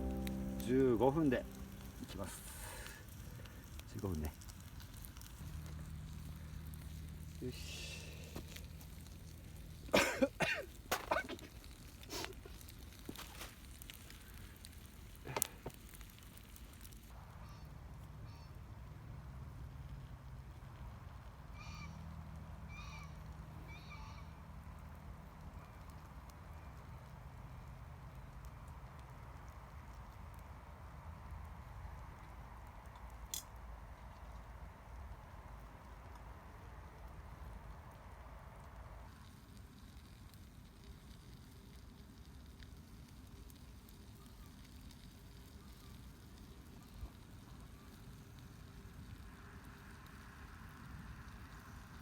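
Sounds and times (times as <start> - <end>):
low steady rumble: 0.0 - 10.6
campfire crackling: 0.0 - 17.3, 24.2 - 52.0.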